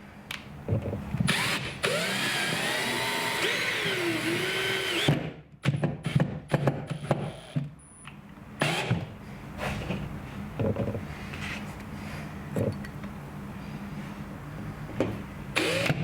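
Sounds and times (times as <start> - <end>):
cordless drill whine: 1.3 - 5.2, 15.6 - 16.0.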